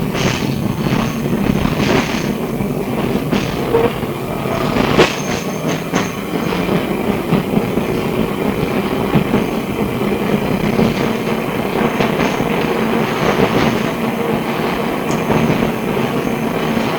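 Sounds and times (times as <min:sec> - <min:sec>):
tram wheels rumbling: 0:00.0 - 0:16.9.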